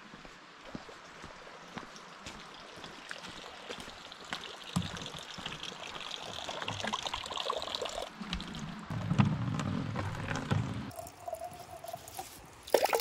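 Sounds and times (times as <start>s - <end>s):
water pouring into container: 2.5s - 8.9s, 10.2s - 13.0s.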